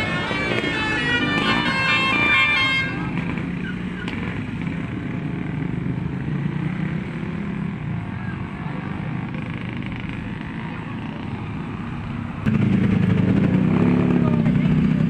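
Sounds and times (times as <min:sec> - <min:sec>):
bus horn playing a melody: 0:00.0 - 0:04.5
bus engine running: 0:00.0 - 0:15.0.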